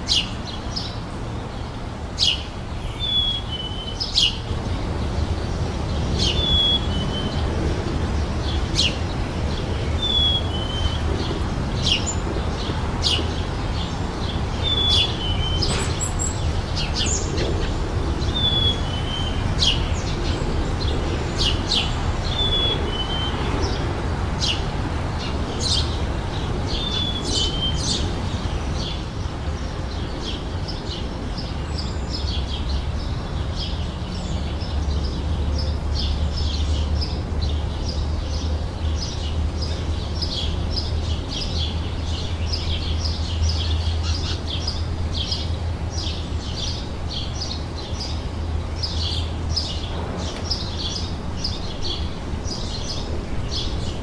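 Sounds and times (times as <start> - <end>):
songbirds chirping: 0.0 - 54.0.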